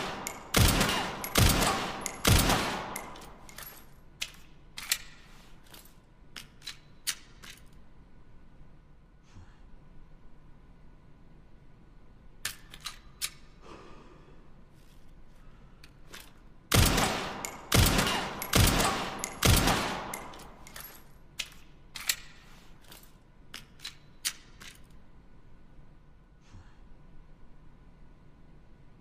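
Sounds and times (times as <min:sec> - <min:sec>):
pistol shots ringing: 0:00.0 - 0:03.5, 0:16.7 - 0:20.8
sharp metallic clicks: 0:00.0 - 0:05.2, 0:16.7 - 0:22.3.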